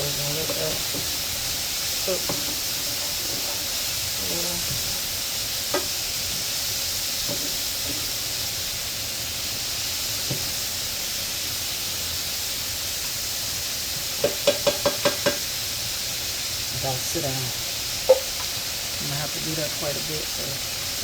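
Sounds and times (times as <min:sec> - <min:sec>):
utensil tapping pan: 0:00.0 - 0:01.2, 0:02.1 - 0:03.7, 0:05.7 - 0:06.0, 0:14.2 - 0:15.5, 0:18.0 - 0:18.6
vegetables sizzling in oil: 0:00.0 - 0:21.0.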